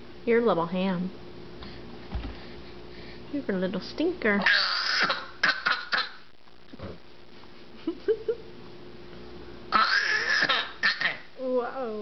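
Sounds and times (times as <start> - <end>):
baby squealing: 4.4 - 6.1, 9.7 - 11.3
baby fake coughing: 4.5 - 6.2, 9.7 - 11.3
baby cooing: 9.7 - 11.3.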